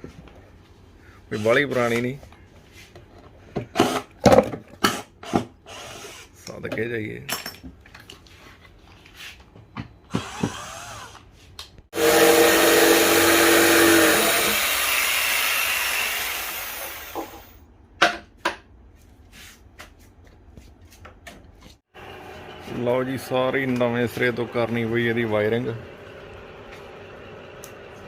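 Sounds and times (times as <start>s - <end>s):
power tool whirring: 4.9s - 6.3s, 10.1s - 11.3s, 11.9s - 17.6s.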